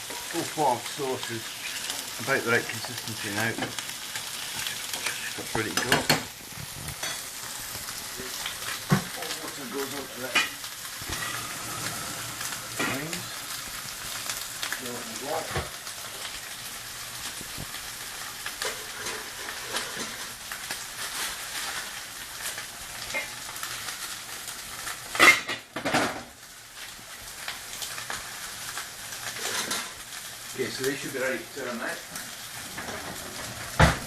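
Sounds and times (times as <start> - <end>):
steaks sizzling in a pan: 0.0 - 34.0.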